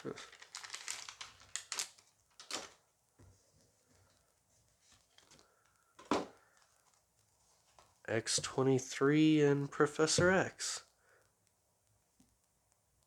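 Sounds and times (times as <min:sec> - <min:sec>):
foil pack rustling: 0:00.0 - 0:02.8.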